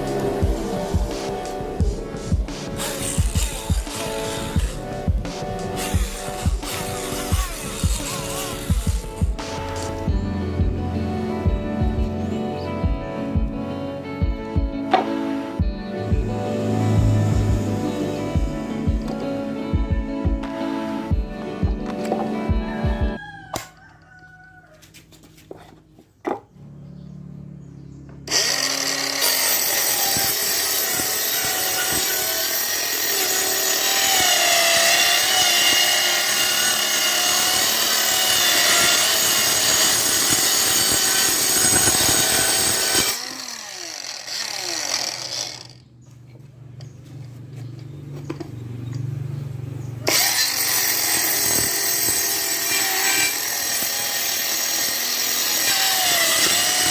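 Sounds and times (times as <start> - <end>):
circular saw cutting wood: 0.0 - 10.4, 28.2 - 45.9, 50.0 - 56.9.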